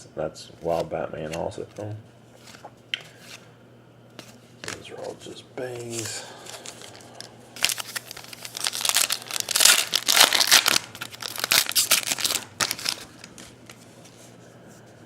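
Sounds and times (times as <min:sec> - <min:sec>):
card pack wrapper crinkling and tearing: 0:05.7 - 0:13.8.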